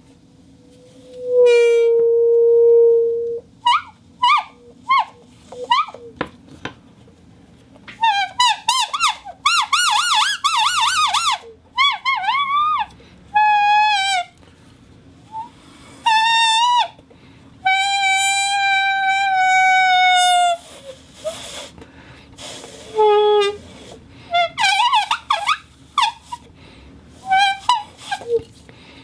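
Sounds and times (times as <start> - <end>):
bottle whistle warbling: 0.7 - 6.0.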